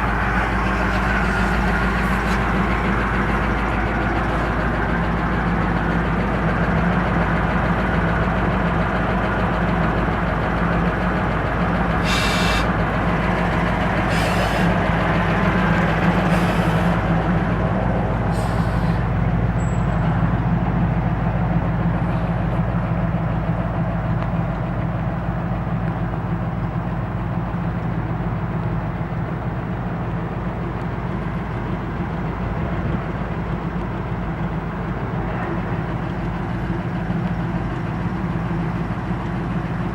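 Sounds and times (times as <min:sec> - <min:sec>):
truck engine idling: 0:00.0 - 0:39.9
air hiss: 0:12.0 - 0:12.7, 0:14.1 - 0:14.7.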